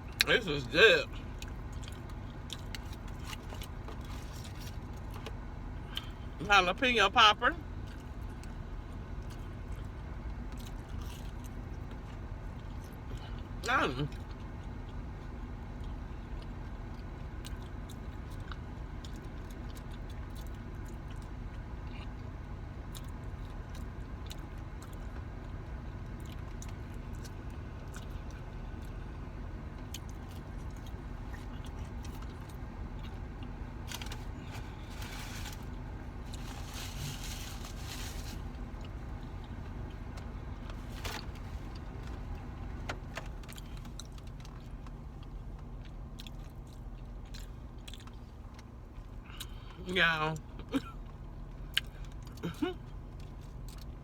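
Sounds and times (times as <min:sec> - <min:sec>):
chewing and crunching: 0:00.0 - 0:06.4, 0:07.6 - 0:49.8, 0:50.4 - 0:54.0
steady low hum: 0:00.0 - 0:54.0
paper wrapper rustling: 0:33.9 - 0:38.5.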